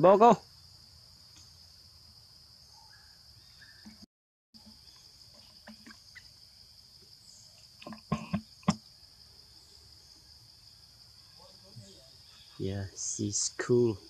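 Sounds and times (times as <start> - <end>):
crickets chirring: 0.0 - 14.0.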